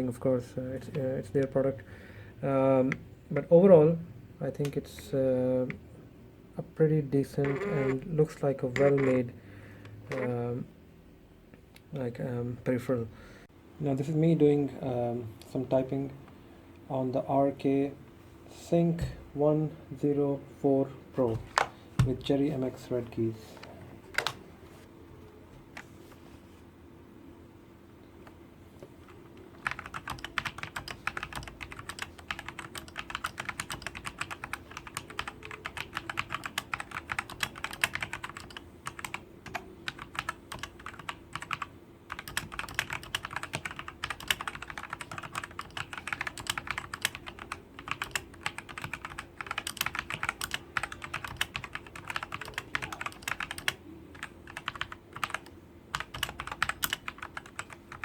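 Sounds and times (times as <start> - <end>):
mechanical keyboard typing: 7.4 - 8.0, 8.8 - 9.2, 29.6 - 58.0.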